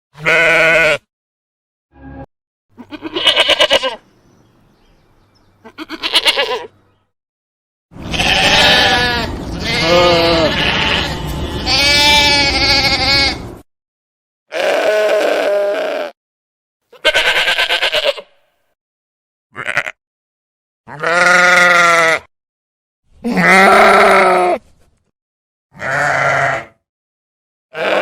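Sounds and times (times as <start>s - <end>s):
sheep bleating: 0.2s - 1.1s, 2.0s - 4.0s, 5.6s - 6.7s, 8.0s - 13.5s, 14.5s - 16.2s, 16.9s - 18.4s, 19.5s - 20.0s, 20.9s - 22.3s, 23.2s - 24.6s, 25.7s - 26.8s, 27.7s - 28.0s.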